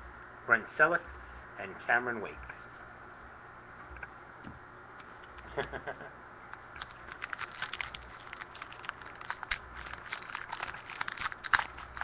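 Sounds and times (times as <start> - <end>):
card pack wrapper crinkling: 6.5 - 12.0.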